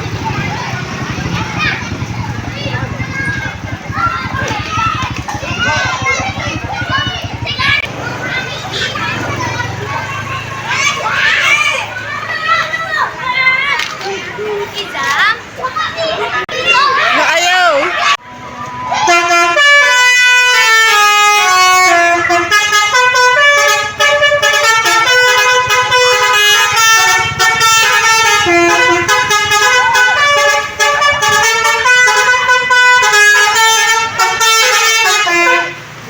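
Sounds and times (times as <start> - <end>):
multi-tone bus horn melody: 18.2 - 36.0.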